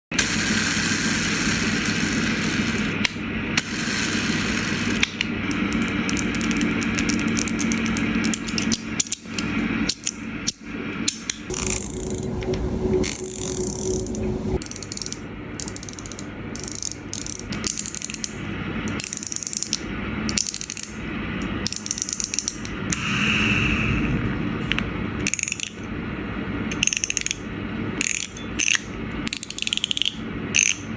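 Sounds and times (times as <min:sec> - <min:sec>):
metal fidget toy clicking: 0:00.5 - 0:11.8, 0:14.6 - 0:21.0, 0:21.6 - 0:22.7, 0:25.2 - 0:25.9, 0:26.7 - 0:27.4, 0:28.0 - 0:30.9.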